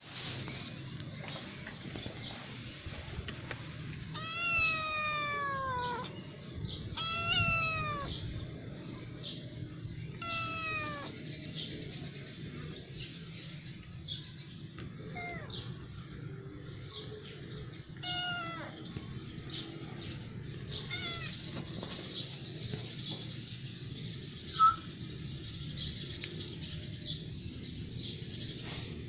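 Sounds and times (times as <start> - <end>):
cat meowing: 4.1 - 6.1, 6.9 - 8.2, 10.2 - 11.1, 18.0 - 18.8, 20.8 - 21.4.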